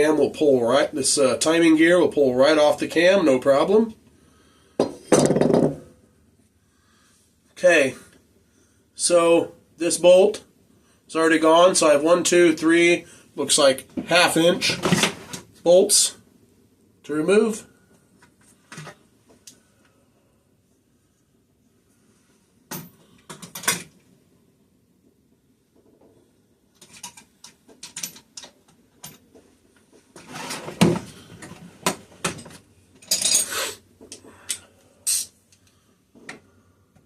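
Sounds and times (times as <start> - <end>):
metal hand tools clinking: 33.0 - 33.6.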